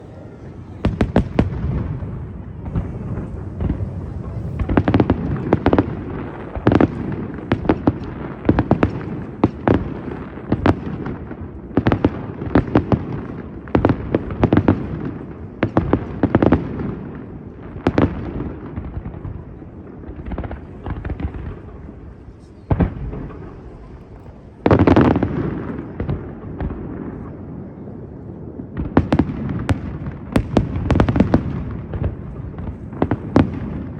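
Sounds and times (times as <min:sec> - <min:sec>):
fireworks bursting with sharp bangs: 0:00.0 - 0:33.9
low rumble of echoing booms: 0:00.8 - 0:08.1.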